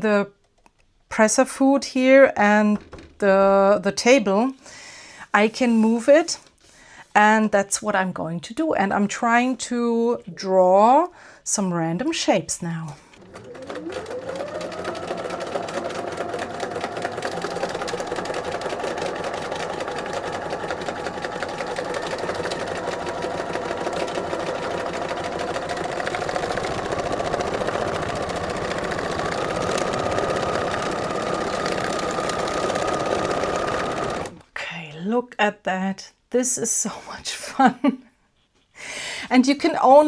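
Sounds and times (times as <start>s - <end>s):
sewing machine stitching: 12.8s - 34.5s.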